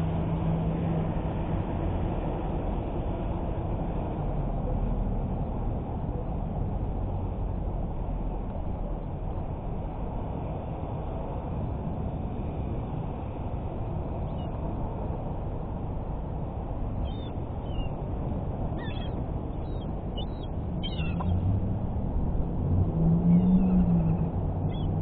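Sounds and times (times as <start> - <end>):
steady low rumble: 0.0 - 25.0
birds chirping: 17.0 - 18.0, 18.6 - 21.5, 23.2 - 25.0
low drawn-out bird call: 17.0 - 18.0, 18.7 - 21.4, 23.2 - 25.0.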